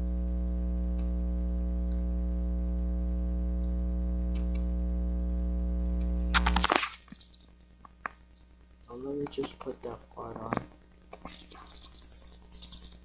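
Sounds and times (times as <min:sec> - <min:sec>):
electrical mains hum: 0:00.0 - 0:13.0
faint clicks: 0:00.9 - 0:01.2, 0:01.8 - 0:02.1, 0:03.6 - 0:04.7.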